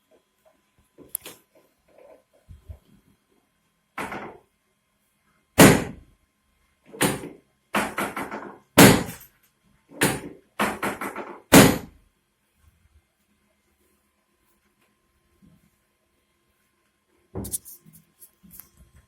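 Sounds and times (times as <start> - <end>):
sharp knocks and thuds: 5.6 - 6.0, 7.0 - 9.2, 10.0 - 11.9.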